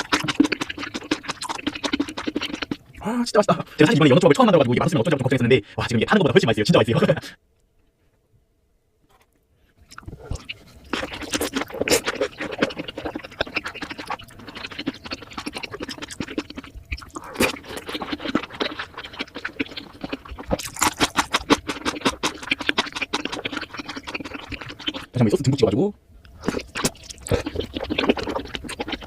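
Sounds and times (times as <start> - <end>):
wet chewing and smacking: 0.0 - 3.0, 9.1 - 25.6, 26.2 - 29.0.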